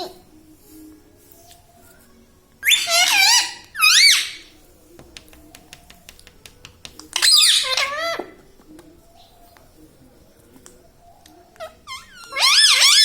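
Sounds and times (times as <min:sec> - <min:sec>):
parrot calling: 0:02.6 - 0:04.5, 0:07.2 - 0:08.4, 0:11.6 - 0:13.0.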